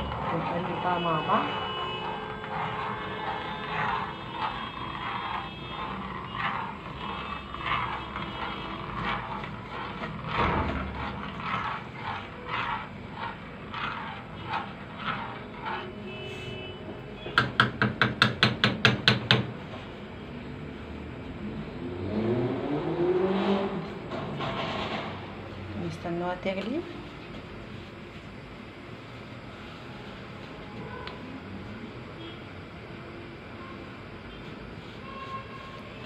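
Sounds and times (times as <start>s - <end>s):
spoon scraping cooking pot: 0.0s - 16.0s.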